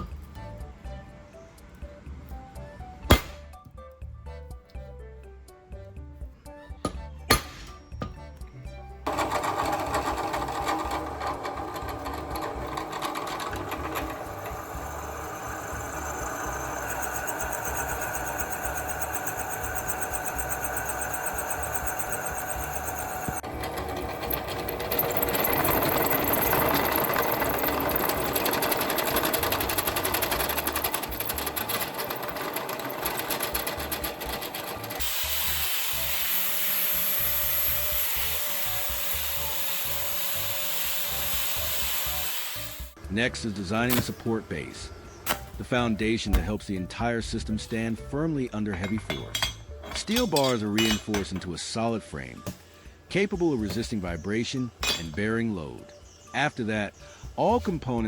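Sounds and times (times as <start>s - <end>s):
power tool running on metal: 9.0s - 43.0s.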